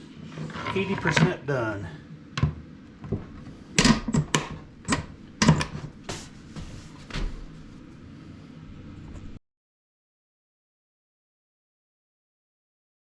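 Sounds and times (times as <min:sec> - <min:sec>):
low steady hum: 0:00.0 - 0:09.4.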